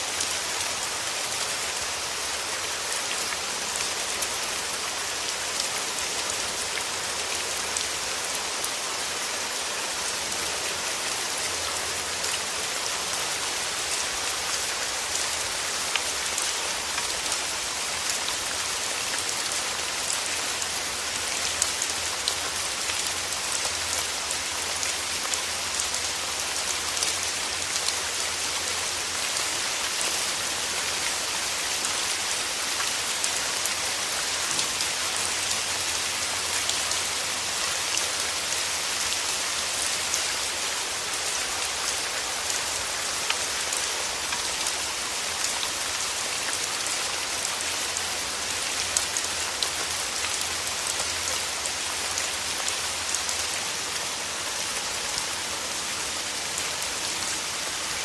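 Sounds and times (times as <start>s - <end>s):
steady rain falling: 0.0s - 58.0s
raindrops ticking on a surface: 13.7s - 53.5s.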